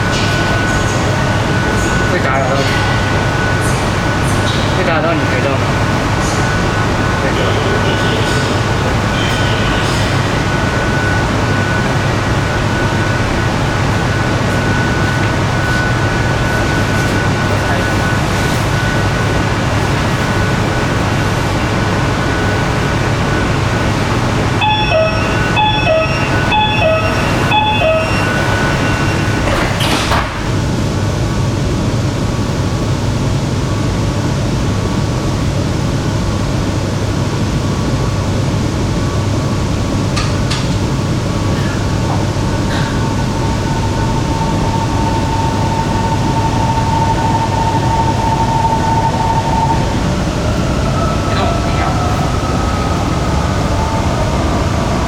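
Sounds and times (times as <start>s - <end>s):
train low hum: 0.0s - 55.0s
door-closing warning beeps: 24.6s - 30.3s.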